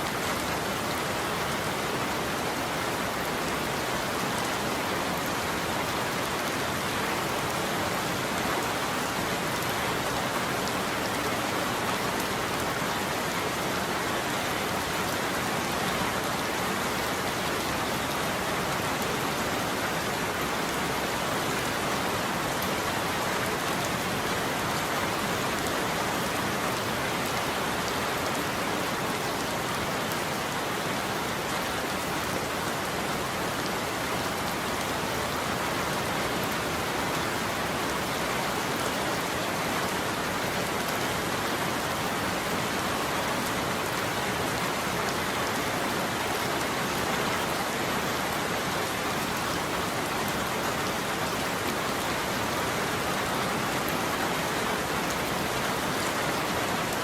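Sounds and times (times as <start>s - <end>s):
heavy rain falling: 0.0s - 57.0s.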